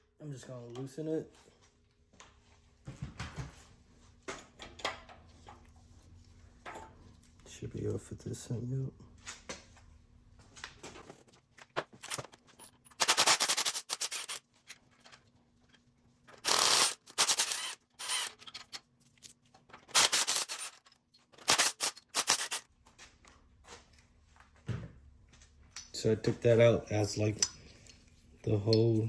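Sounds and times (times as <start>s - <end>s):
ratchet wrench clicking: 13.0s - 14.4s, 16.4s - 18.5s, 19.9s - 20.8s, 21.4s - 22.6s.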